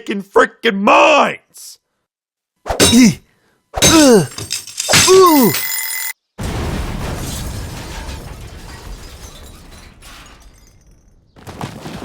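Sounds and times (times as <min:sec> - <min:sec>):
cartoon explosion with deep rumble: 0:06.4 - 0:09.1.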